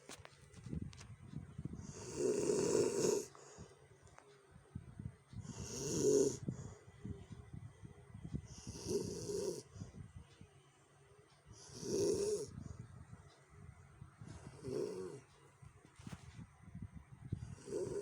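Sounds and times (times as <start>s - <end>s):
crackly breathing: 1.7s - 4.4s, 5.3s - 7.5s, 8.2s - 10.2s, 11.5s - 13.3s, 14.2s - 16.4s, 17.3s - 18.0s
person snoring harshly: 1.9s - 3.3s, 5.5s - 6.4s, 8.6s - 9.6s, 11.6s - 12.5s, 14.5s - 15.2s, 17.5s - 18.0s.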